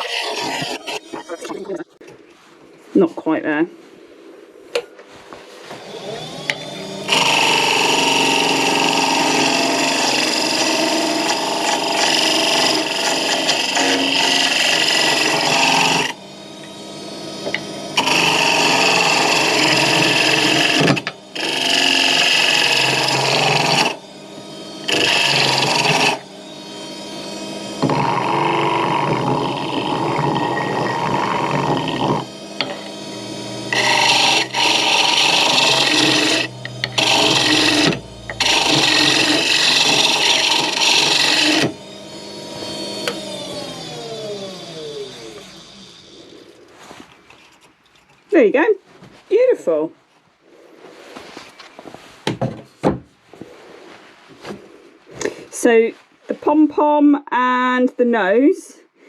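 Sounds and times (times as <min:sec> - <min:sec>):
turning tool cutting wood: 0:00.0 - 0:01.9, 0:05.6 - 0:48.2
wood lathe spinning: 0:00.0 - 0:01.9, 0:05.6 - 0:48.1.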